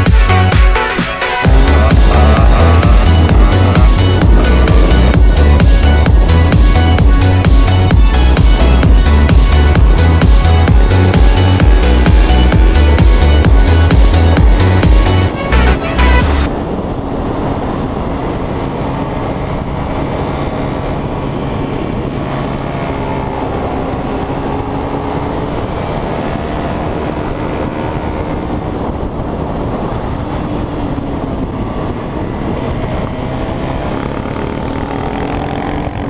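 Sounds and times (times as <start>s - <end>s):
motor humming steadily: 1.5s - 16.3s.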